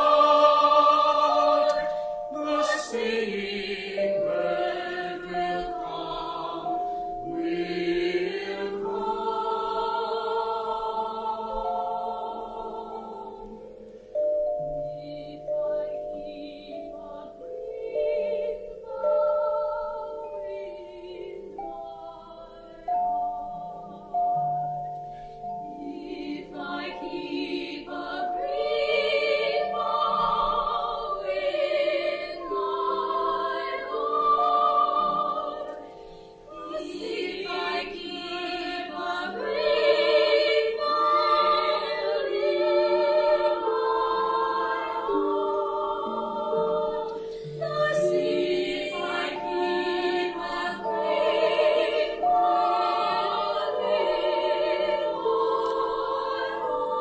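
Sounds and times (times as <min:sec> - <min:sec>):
group of voices singing: 0:00.0 - 0:13.6, 0:25.8 - 0:57.0.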